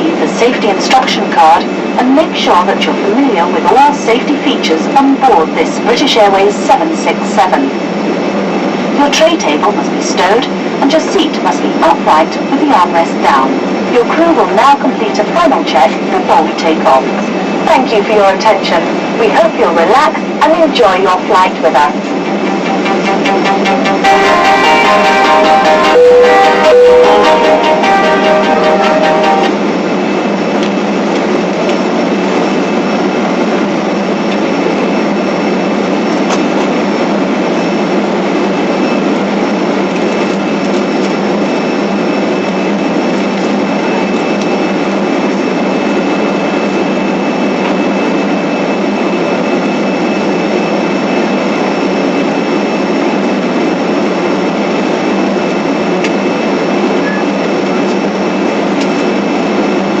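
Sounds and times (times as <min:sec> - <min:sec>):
jet engine and air-system hum: 0:00.0 - 1:00.0.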